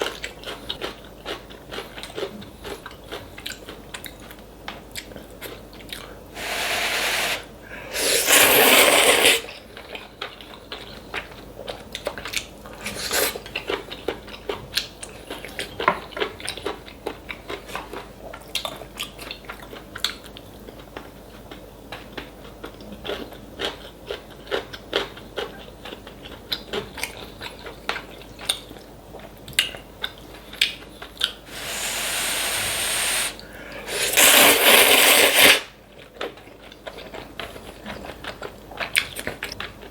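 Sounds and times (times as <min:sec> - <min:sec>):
slurping noodles: 0:06.3 - 0:09.6, 0:12.8 - 0:13.4, 0:31.5 - 0:35.7.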